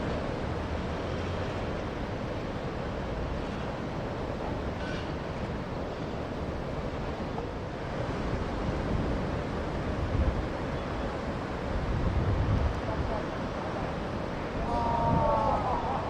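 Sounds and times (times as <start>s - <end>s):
ocean waves breaking: 0.0s - 16.0s
wind rumbling on microphone: 7.0s - 16.0s.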